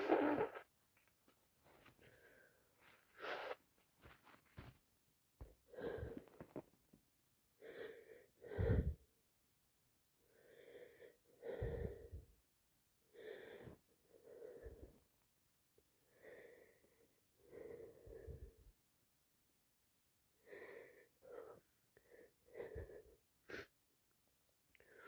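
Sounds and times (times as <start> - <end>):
woman wheezy breaths and sniffles: 1.7 - 4.7, 5.5 - 6.7.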